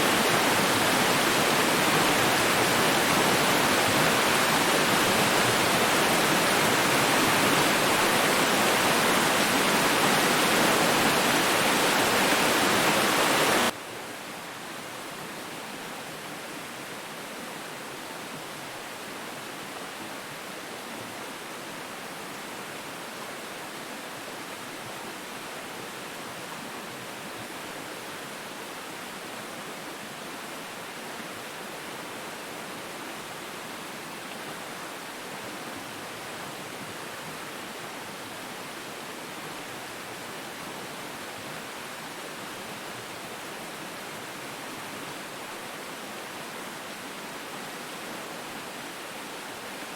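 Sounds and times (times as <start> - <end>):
running water: 0.0 - 13.8.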